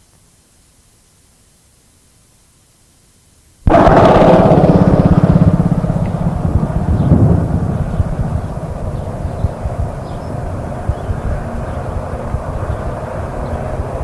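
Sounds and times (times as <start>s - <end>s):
tape hiss: 0.0s - 13.9s
propeller airliner overhead: 3.7s - 14.0s.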